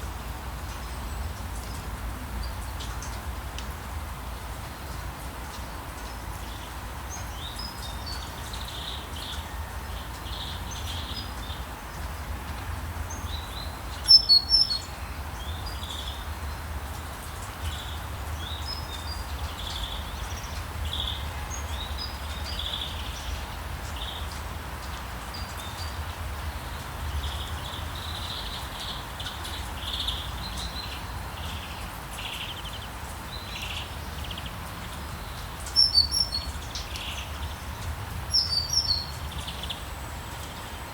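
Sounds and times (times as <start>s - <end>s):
small birds chirping: 13.1s - 16.6s, 17.3s - 24.4s, 25.3s - 40.9s
loud high bird chirps: 14.0s - 14.9s, 35.6s - 37.2s, 38.3s - 39.2s.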